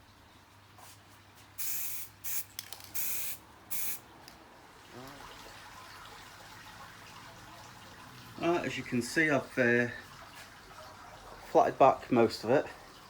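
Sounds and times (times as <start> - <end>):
spray paint hissing bursts: 1.6 - 4.0.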